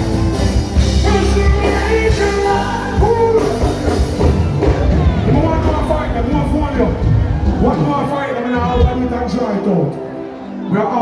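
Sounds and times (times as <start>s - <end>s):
live band music: 0.0s - 10.7s
person singing: 1.0s - 3.8s.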